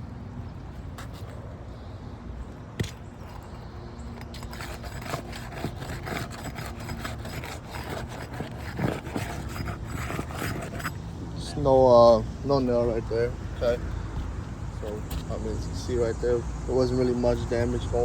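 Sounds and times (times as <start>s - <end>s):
metal tool scraping under shingles: 2.8s - 11.2s.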